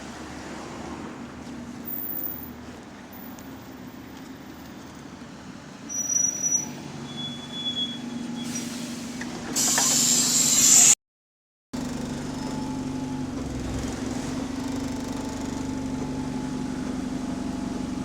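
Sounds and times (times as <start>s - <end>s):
bus engine hum: 0.0s - 11.0s, 11.8s - 18.0s
road noise: 0.0s - 11.0s, 11.8s - 18.0s
loud hiss: 9.6s - 11.0s.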